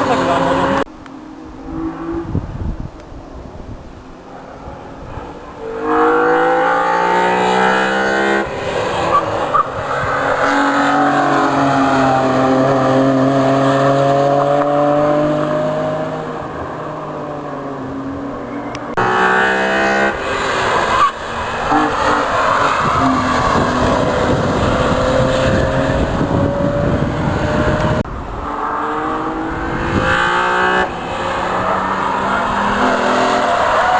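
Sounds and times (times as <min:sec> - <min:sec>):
cars accelerating past: 0:05.6 - 0:17.6.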